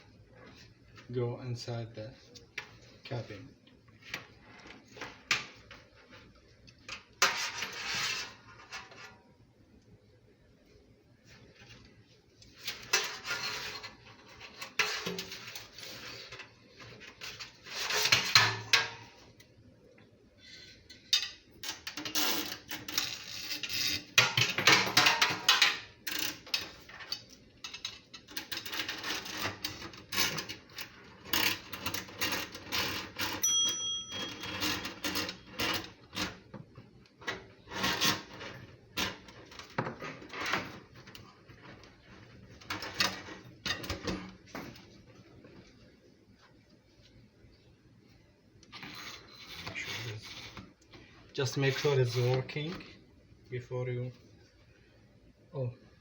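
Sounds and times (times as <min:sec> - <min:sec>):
metallic ring: 0:33.3 - 0:35.5.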